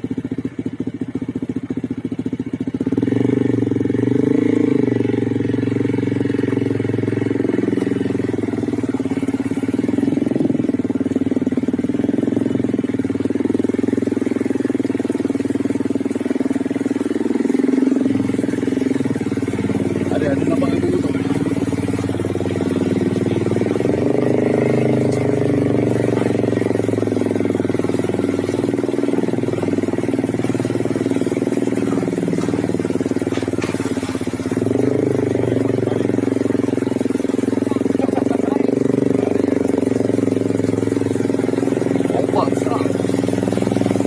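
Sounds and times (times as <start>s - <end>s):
vehicle engine running: 0.0s - 44.0s.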